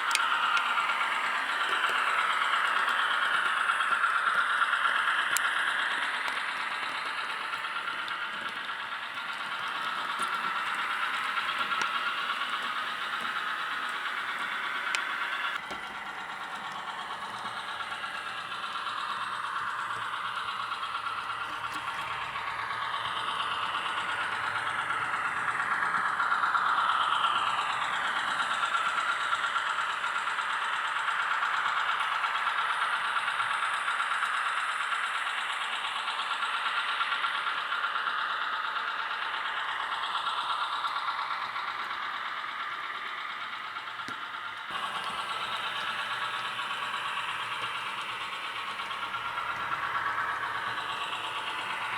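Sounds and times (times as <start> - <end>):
model diesel engine sound: 0.0 - 51.9.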